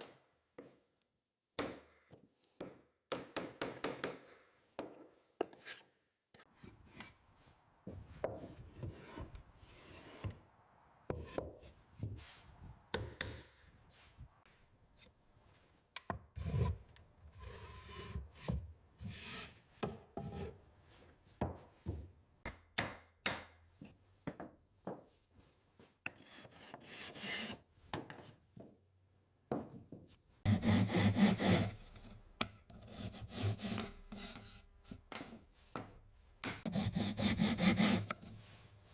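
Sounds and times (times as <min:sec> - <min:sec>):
hand tools scraping wood: 0:08.2 - 0:10.4, 0:16.4 - 0:20.6, 0:26.1 - 0:27.6, 0:30.5 - 0:38.6.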